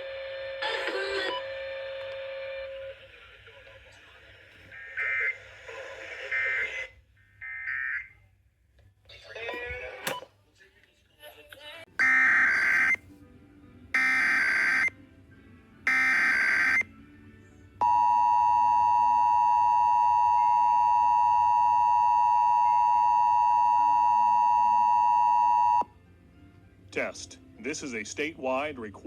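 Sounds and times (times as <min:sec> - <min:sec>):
two-tone attention signal: 0:12.0 - 0:13.0, 0:14.0 - 0:14.9, 0:15.9 - 0:16.9.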